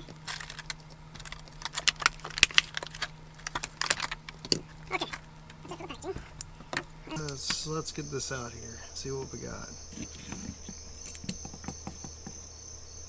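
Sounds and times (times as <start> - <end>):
plastic packaging clicking and crackling: 0.0 - 7.7.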